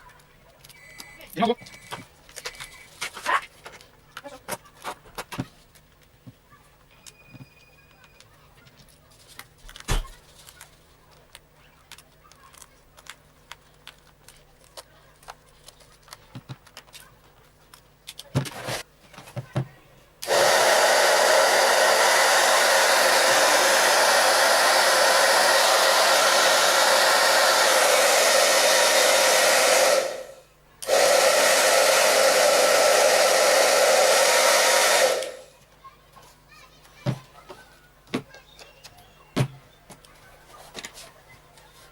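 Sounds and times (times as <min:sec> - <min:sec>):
hair dryer blowing: 0:20.2 - 0:35.6.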